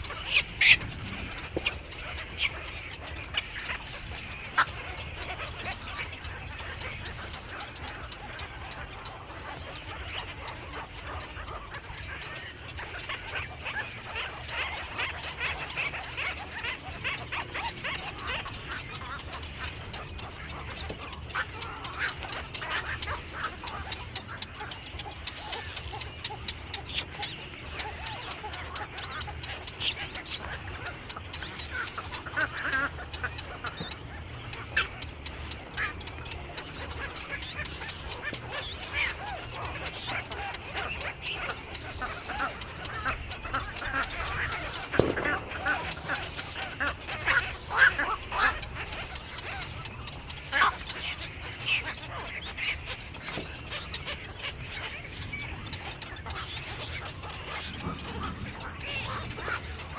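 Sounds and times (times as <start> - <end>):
many birds chattering: 0.0 - 59.9
low hum: 40.3 - 50.4.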